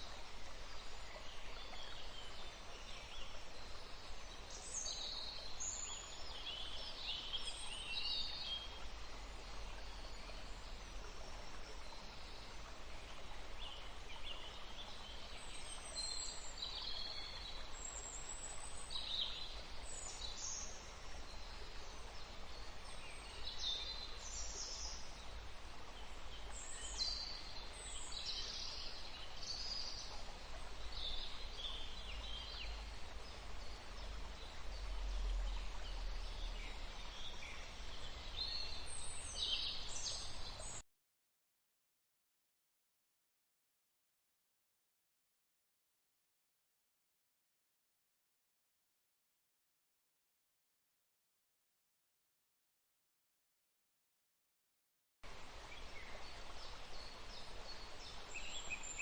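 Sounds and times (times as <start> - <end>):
steady background hiss: 0.0 - 40.8, 55.3 - 59.0.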